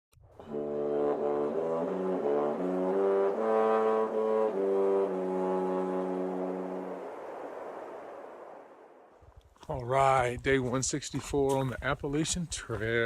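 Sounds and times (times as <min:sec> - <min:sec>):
brass chords: 0:00.4 - 0:08.6.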